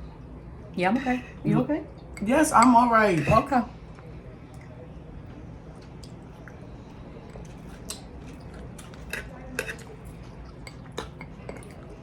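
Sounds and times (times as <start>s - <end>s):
low steady hum: 0.0s - 12.0s
cutlery clinking on dishes: 8.8s - 11.9s.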